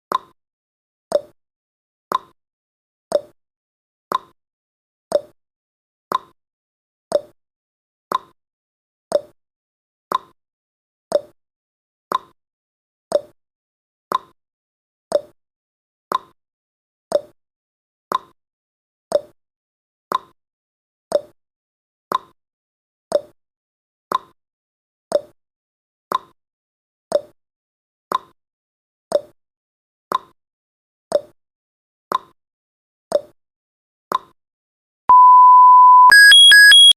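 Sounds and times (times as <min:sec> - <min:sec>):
countdown timer ticking: 0:35.1 - 0:36.9.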